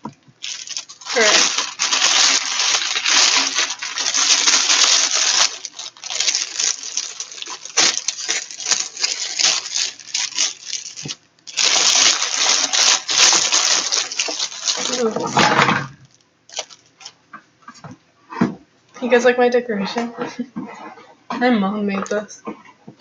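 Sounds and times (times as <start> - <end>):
plastic packaging crinkling: 0.4 - 17.2.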